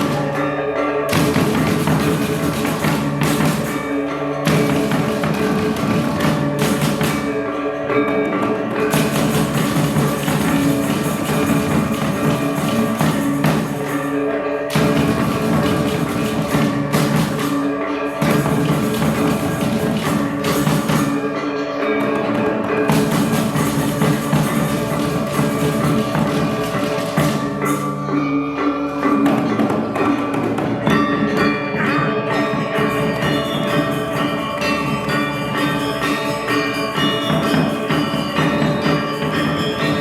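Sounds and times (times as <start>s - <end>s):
drums: 0.0s - 40.0s
metallophones ringing: 0.0s - 40.0s.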